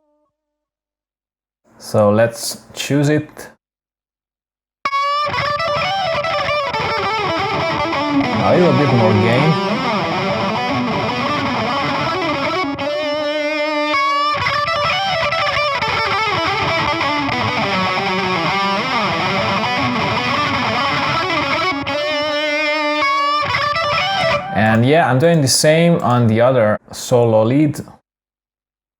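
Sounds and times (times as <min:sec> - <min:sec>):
distorted electric guitar solo: 0:05.6 - 0:13.7, 0:16.5 - 0:21.0, 0:23.9 - 0:25.4.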